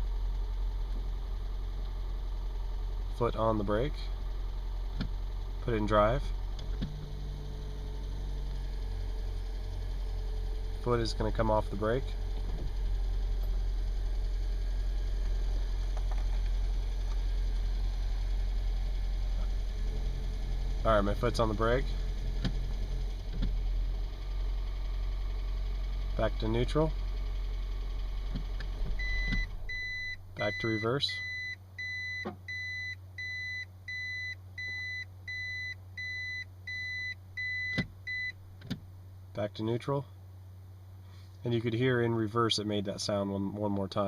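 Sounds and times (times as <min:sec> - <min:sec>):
car engine idling: 0:00.0 - 0:39.4
low hum: 0:04.0 - 0:30.7
reverse warning beeps: 0:29.0 - 0:38.4.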